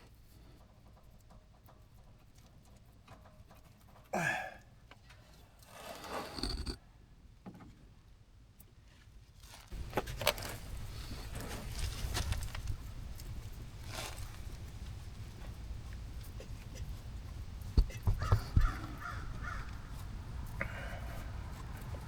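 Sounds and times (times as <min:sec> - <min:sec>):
hand tools clicking and scraping: 0:05.6 - 0:06.8, 0:09.7 - 0:22.0.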